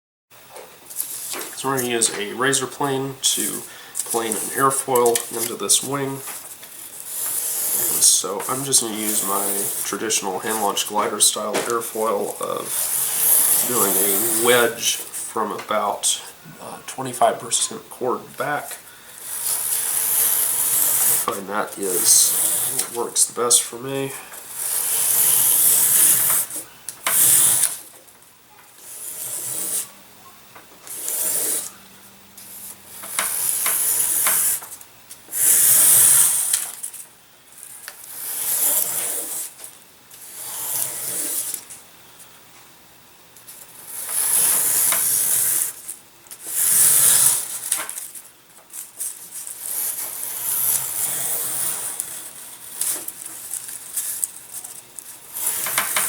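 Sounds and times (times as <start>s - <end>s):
plane shaving wood strokes: 1.0s - 15.9s, 17.5s - 23.7s, 24.4s - 27.9s, 28.8s - 30.0s, 30.8s - 31.8s, 32.5s - 36.8s, 38.0s - 39.6s, 40.2s - 41.6s, 43.8s - 45.8s, 46.4s - 47.8s, 49.4s - 54.3s, 55.2s - 56.0s.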